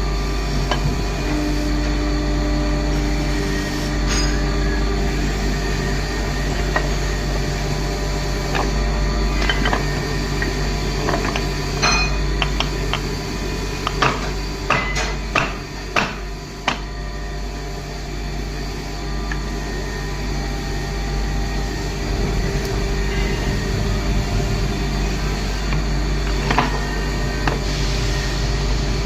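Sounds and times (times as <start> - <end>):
low machine hum: 0.0 - 29.0
hammer on steel: 14.0 - 16.8.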